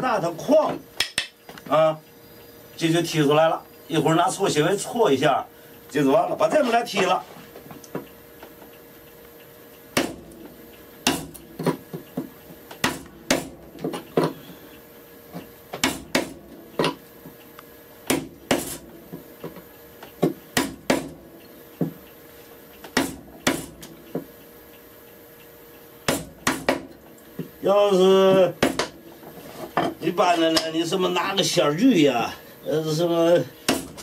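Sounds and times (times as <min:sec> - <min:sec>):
chisel struck with sharp knocks: 0:10.0 - 0:10.2, 0:11.0 - 0:11.8, 0:12.8 - 0:14.3, 0:15.8 - 0:17.0, 0:18.1 - 0:18.8, 0:20.2 - 0:21.1, 0:22.9 - 0:24.3, 0:26.1 - 0:26.9, 0:28.6 - 0:29.0, 0:33.7 - 0:34.0.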